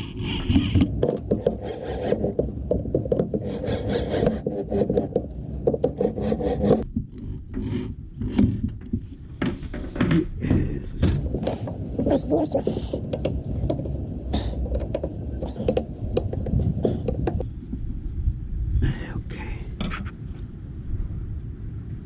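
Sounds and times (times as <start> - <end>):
wood being rubbed by hand: 0.0 - 6.8.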